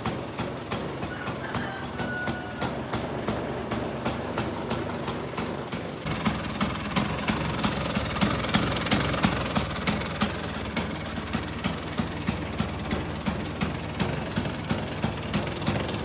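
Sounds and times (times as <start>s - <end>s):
scooter engine idling: 0.0s - 16.0s
regular ticking: 6.0s - 16.0s.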